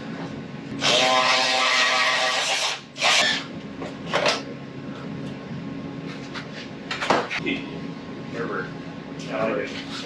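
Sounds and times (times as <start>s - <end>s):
power drill motor whine: 0.8s - 3.5s.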